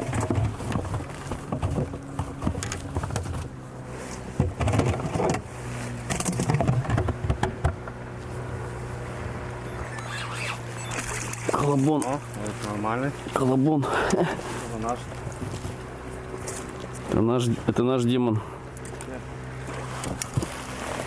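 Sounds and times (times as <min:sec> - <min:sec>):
handling knocks and rustles: 0:00.0 - 0:07.9
boat motor humming: 0:00.0 - 0:21.0.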